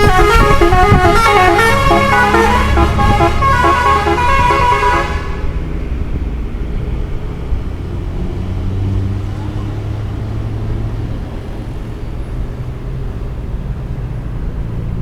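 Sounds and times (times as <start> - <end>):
multi-tone musical air horn: 0.0 - 5.6
low engine rumble: 0.0 - 15.0
road noise: 0.0 - 15.0.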